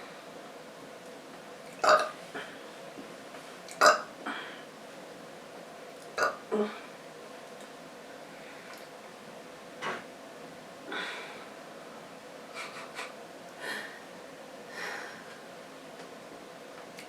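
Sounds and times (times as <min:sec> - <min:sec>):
woman breathing noisily: 0:04.2 - 0:04.7, 0:10.8 - 0:11.6, 0:13.6 - 0:15.5.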